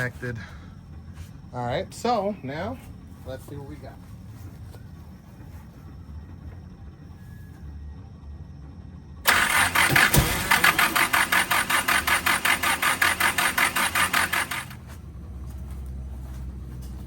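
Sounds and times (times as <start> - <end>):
starter motor cranking engine: 9.3 - 15.0.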